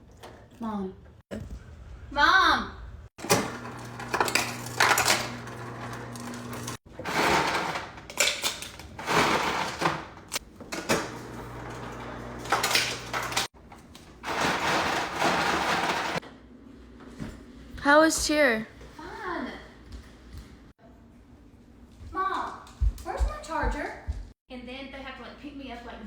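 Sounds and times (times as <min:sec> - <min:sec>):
dishes and drawers clattering: 0:03.2 - 0:13.5, 0:14.2 - 0:16.2.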